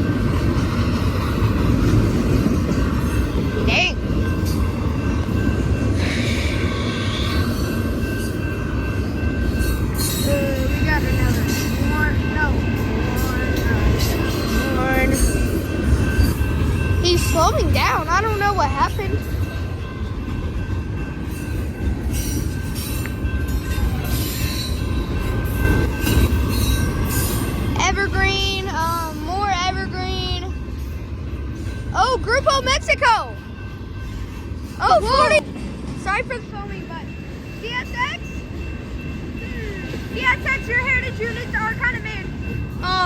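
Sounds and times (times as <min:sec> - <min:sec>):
train wheels rumbling on rail: 0:00.0 - 0:43.0
high wheel squeal: 0:05.9 - 0:08.5.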